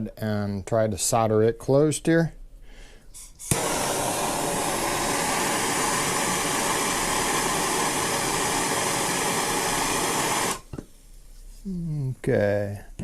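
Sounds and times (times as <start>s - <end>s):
soldering torch hissing: 3.2s - 10.8s.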